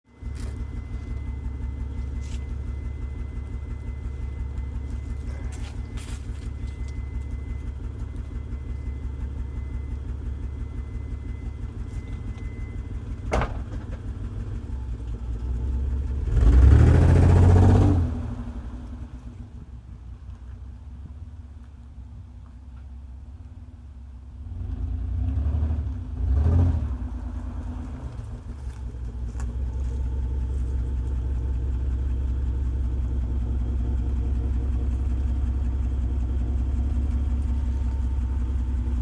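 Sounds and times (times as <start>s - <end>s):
car exhaust idling roughly: 0.1s - 17.7s, 27.1s - 39.0s
engine revving: 16.1s - 18.8s, 24.4s - 28.5s.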